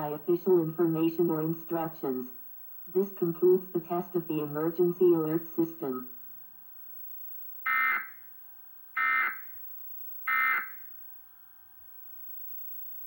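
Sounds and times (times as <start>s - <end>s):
harsh digital data tone bursts: 10.3s - 10.9s.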